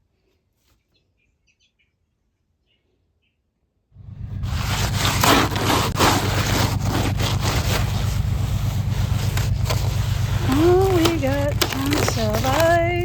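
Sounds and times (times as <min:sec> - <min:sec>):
rough crunching noises: 0:04.0 - 0:13.0.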